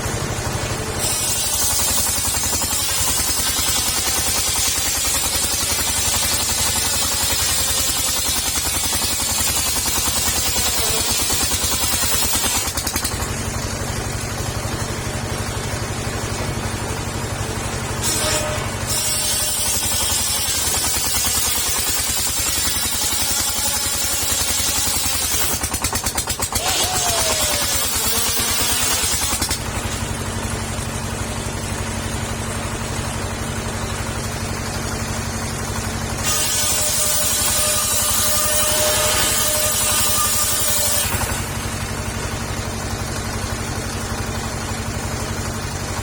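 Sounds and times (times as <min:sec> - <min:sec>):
circular saw engine running: 0:00.0 - 0:46.0
saw blade hissing through wood: 0:00.9 - 0:13.3, 0:17.8 - 0:30.0, 0:36.2 - 0:41.8.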